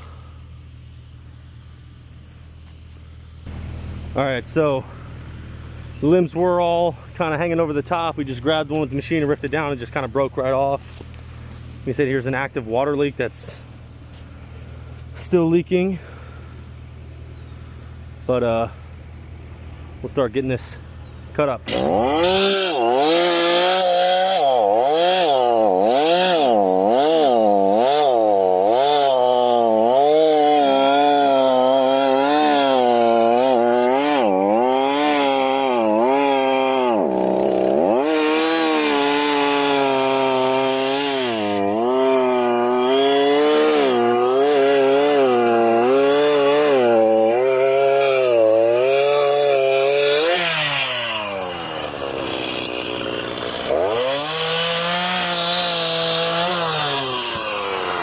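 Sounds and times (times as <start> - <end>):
chainsaw cutting wood: 21.7 - 58.0.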